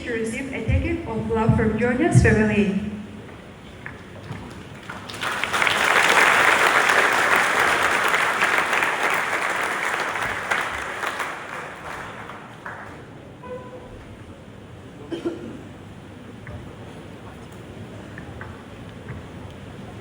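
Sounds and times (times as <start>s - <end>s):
crowd clapping in a hall: 3.2s - 13.4s.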